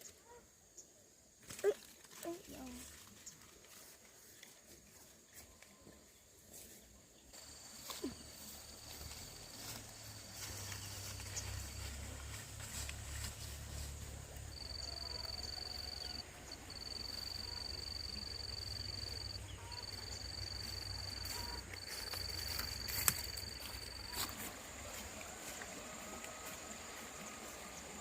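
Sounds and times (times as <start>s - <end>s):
insect trilling: 14.5s - 24.8s.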